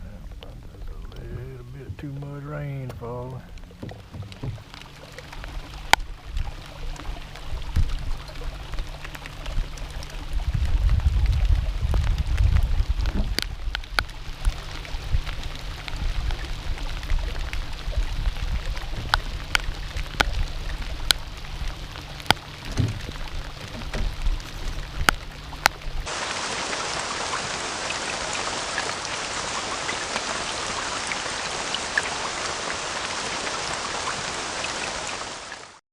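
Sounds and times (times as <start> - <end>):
low rumble: 0.0 - 26.3
raindrops ticking: 0.0 - 35.8
steady rain hiss: 0.0 - 35.8.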